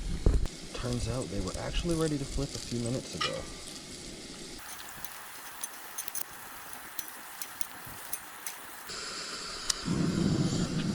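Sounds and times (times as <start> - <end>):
food sizzling: 3.5 - 8.9
campfire pops and crackles: 4.6 - 8.9.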